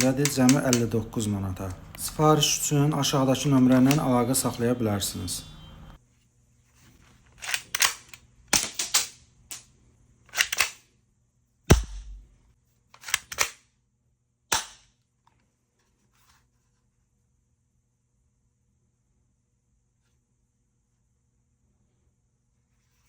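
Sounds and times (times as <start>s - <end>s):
airsoft pistol shots: 11.7s - 12.3s
low thud: 11.7s - 12.4s.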